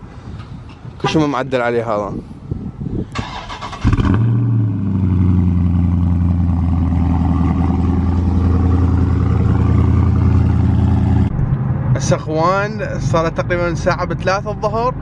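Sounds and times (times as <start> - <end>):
car engine idling: 4.2 - 11.4.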